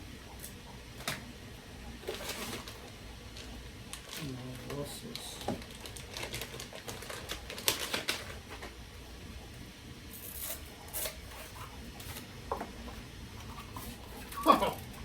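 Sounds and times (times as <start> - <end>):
plastic packaging crinkling: 2.0 - 8.8.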